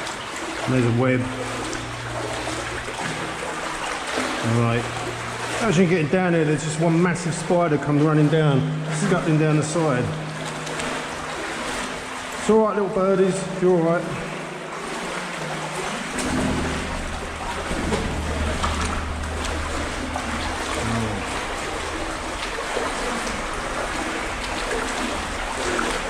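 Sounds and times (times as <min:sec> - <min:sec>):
water splashing in tunnel: 0:00.0 - 0:26.0
low rumble: 0:16.1 - 0:26.0.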